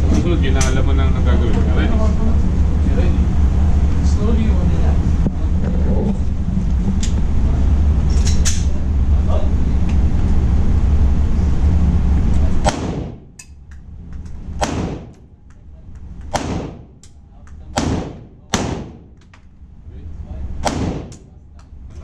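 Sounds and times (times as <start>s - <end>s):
low rumble: 0.0s - 22.0s
pistol shots with echo: 12.6s - 13.3s, 14.6s - 15.2s, 16.3s - 17.0s, 17.8s - 19.2s, 20.6s - 21.3s.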